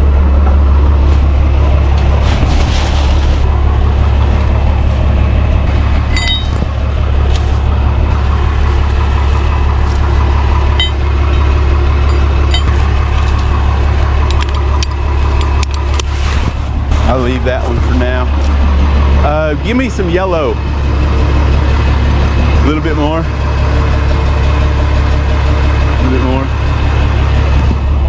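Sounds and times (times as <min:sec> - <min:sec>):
truck engine idling: 0:00.0 - 0:28.0
metallic clinks of chain: 0:06.1 - 0:06.6.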